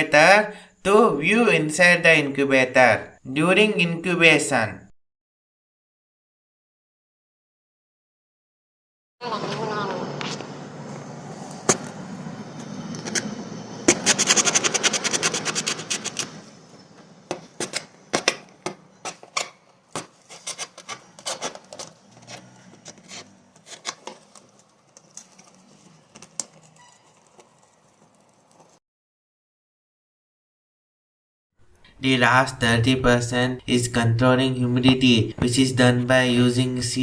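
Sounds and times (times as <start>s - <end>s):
cardboard scraping: 13.9s - 16.5s, 19.9s - 28.8s.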